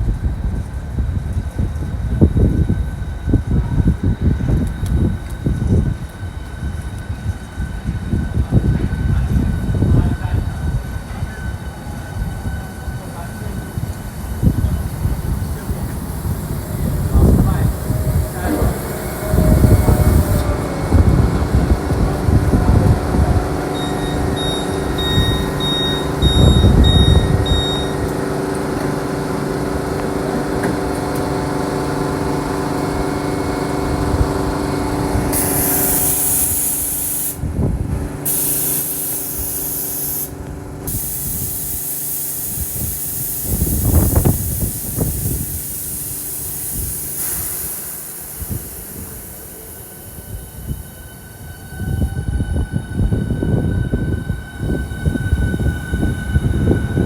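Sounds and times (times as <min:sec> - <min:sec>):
train equipment humming: 0:00.0 - 0:57.0
loud air hiss: 0:08.3 - 0:57.0
short high beeps: 0:23.7 - 0:28.0.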